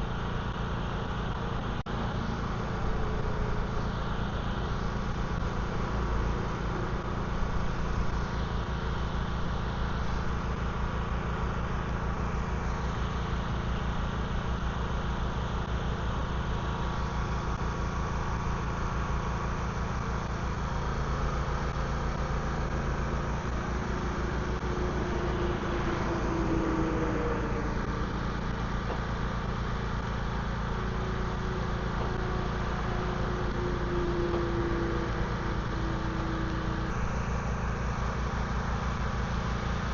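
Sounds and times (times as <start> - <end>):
vehicle engine droning: 0.0 - 39.9.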